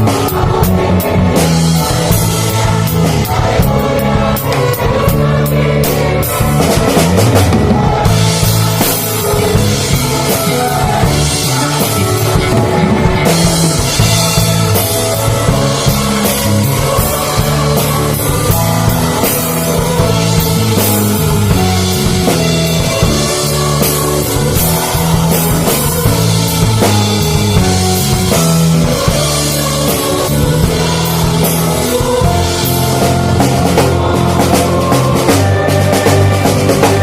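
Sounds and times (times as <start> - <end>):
band playing a hymn: 0.0 - 37.0.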